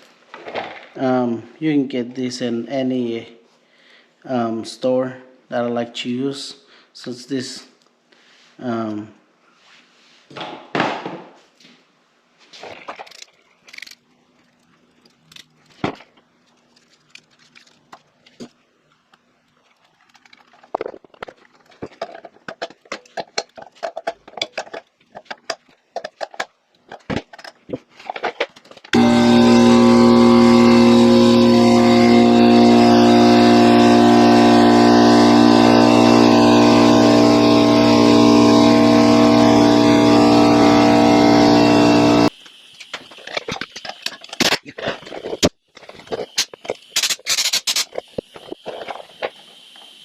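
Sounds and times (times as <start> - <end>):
air compressor running: 28.9 - 42.4.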